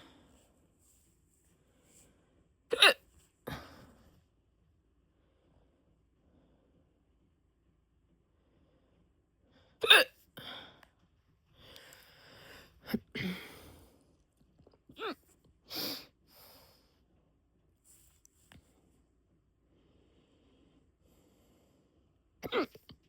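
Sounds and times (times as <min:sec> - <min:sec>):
breathing: 0:00.0 - 0:02.6, 0:05.1 - 0:07.0, 0:08.3 - 0:09.8, 0:10.4 - 0:14.2, 0:15.8 - 0:17.1, 0:19.6 - 0:22.2
person hiccuping: 0:02.7 - 0:03.0, 0:09.8 - 0:10.1, 0:22.4 - 0:22.9.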